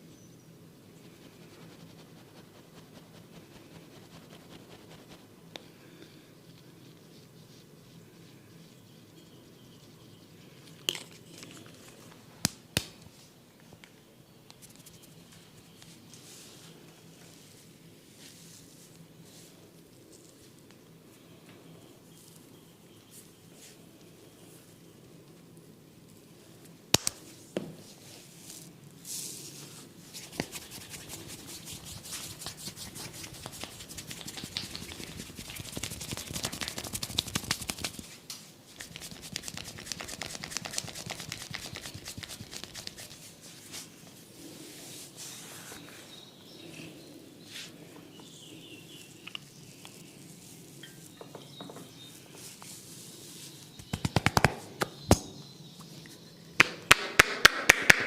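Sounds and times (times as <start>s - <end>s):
crackling and scratching on hair: 1.0s - 5.4s, 14.5s - 20.8s, 28.0s - 46.0s
tapping strokes on head: 32.1s - 38.0s, 53.8s - 55.2s, 56.6s - 58.0s.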